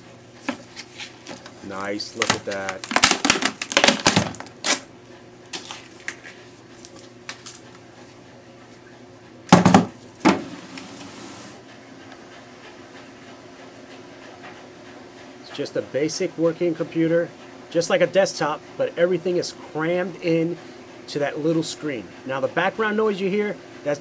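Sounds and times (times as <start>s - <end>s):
clothes dryer humming: 0.0s - 24.0s
computer parts being handled: 0.5s - 4.8s.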